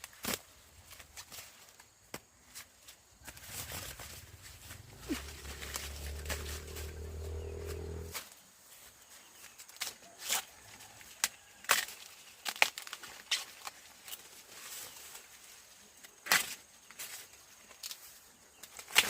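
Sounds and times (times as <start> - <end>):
sharp cracks and rustles: 0.0 - 8.4, 9.6 - 15.4, 16.0 - 19.0
steady low hum: 3.3 - 8.2.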